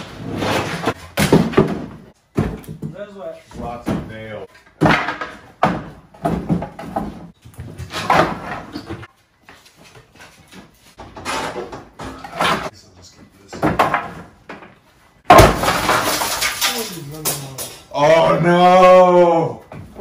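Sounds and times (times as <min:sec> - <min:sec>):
glass window breaking: 0:15.3 - 0:17.9.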